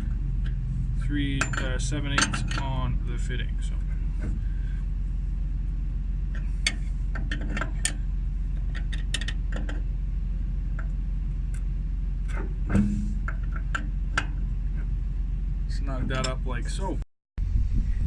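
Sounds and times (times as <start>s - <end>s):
steady low hum: 0.0s - 18.0s
wrenches clinking on metal: 1.3s - 2.9s.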